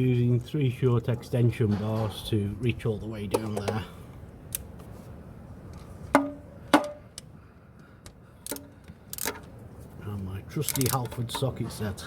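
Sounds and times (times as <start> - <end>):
metal socket clinking: 10.6 - 11.5.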